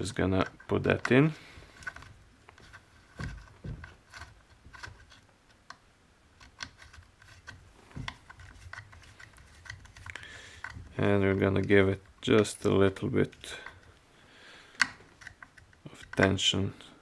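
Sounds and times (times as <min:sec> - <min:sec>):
small clicks and taps: 0:06.4 - 0:12.5, 0:14.7 - 0:16.3.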